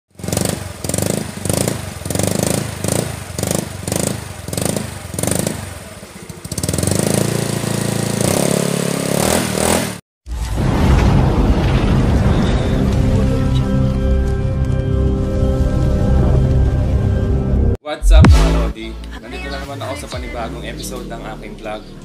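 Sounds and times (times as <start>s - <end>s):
scooter engine revving: 0.1s - 10.0s
music: 12.8s - 22.0s.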